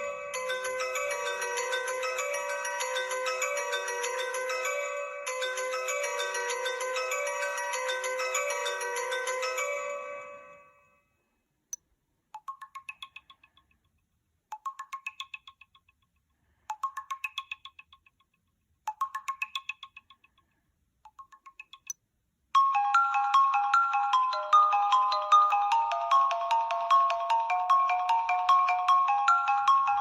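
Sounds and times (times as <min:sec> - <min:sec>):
bell-like notes: 0:00.0 - 0:11.0
ringtone melody: 0:00.0 - 0:11.0, 0:22.6 - 0:30.0
ringtone: 0:00.0 - 0:11.2, 0:12.4 - 0:13.7, 0:14.5 - 0:16.0, 0:16.6 - 0:18.2, 0:18.9 - 0:20.4, 0:21.1 - 0:30.0.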